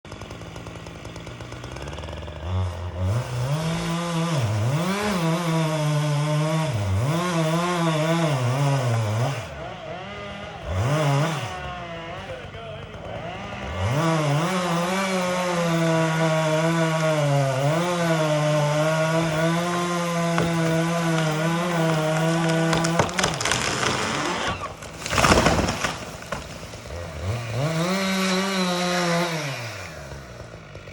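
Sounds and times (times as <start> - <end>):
chainsaw cutting wood: 0.1 - 30.9
tree crashing down: 17.9 - 29.2.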